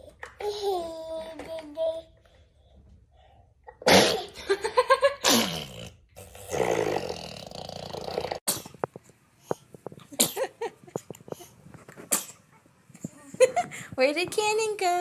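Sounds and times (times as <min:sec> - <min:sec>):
baby sneezing: 0:03.9 - 0:04.3.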